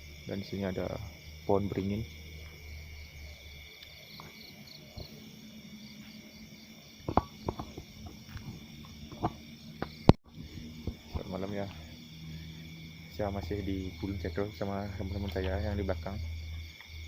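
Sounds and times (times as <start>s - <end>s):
crickets and insects trilling: 0.0s - 17.0s
sharp clicks or knocks: 7.1s - 10.2s.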